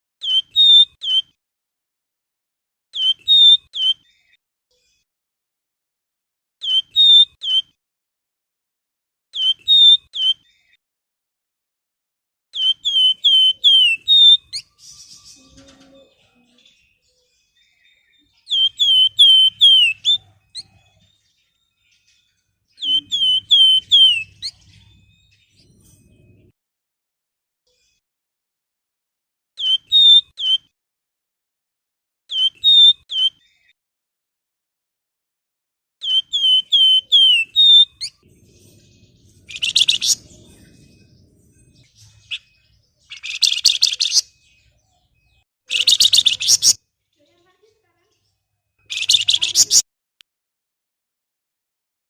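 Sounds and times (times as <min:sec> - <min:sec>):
bird whistling song: 0:00.2 - 0:01.4, 0:03.0 - 0:04.4, 0:06.6 - 0:07.8, 0:09.4 - 0:10.8, 0:12.6 - 0:16.1, 0:17.6 - 0:21.2, 0:21.9 - 0:25.8, 0:29.6 - 0:30.7, 0:32.3 - 0:33.7, 0:36.0 - 0:46.8, 0:48.8 - 0:49.8.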